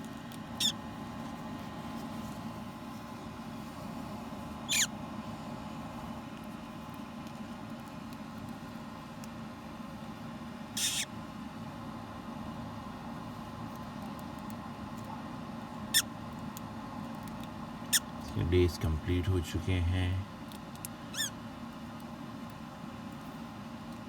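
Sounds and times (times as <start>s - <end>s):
steady low hum: 0.0s - 10.5s, 16.7s - 21.1s
chick squeaking: 4.7s - 4.9s.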